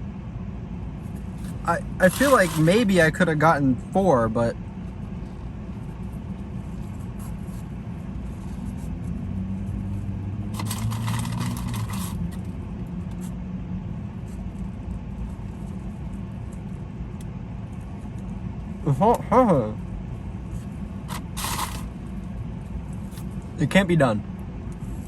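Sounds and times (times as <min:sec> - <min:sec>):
noisy rustle: 0:01.0 - 0:03.2, 0:04.8 - 0:13.4, 0:20.1 - 0:23.6
car engine idling: 0:01.0 - 0:04.7, 0:09.9 - 0:13.2, 0:18.1 - 0:24.2.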